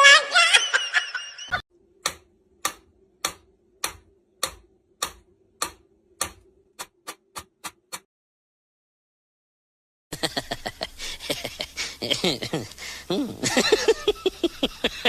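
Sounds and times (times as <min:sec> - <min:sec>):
faint steady hum: 0:10.1 - 0:15.0.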